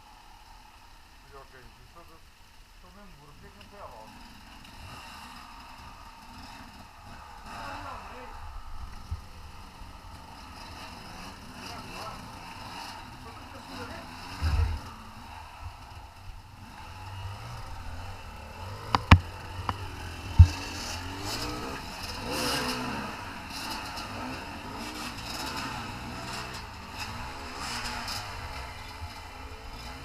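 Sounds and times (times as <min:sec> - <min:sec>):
motorcycle engine revving: 0:03.6 - 0:30.0
rushing microphone noise: 0:14.4 - 0:16.3
sharp knocks: 0:18.8 - 0:19.8, 0:20.4 - 0:20.7.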